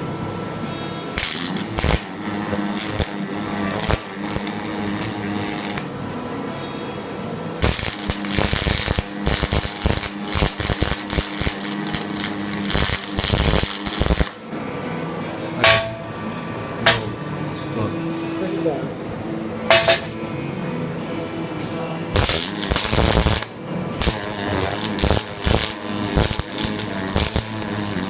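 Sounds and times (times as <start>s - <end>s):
steady hum: 0.0s - 28.0s
arc welder crackling: 1.2s - 6.0s, 7.6s - 14.5s, 22.1s - 28.0s.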